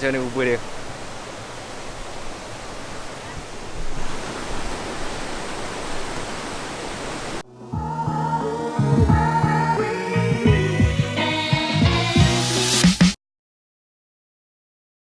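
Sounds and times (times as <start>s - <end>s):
low rumbling gusts: 0.0s - 7.4s
background music with a beat: 7.8s - 13.2s.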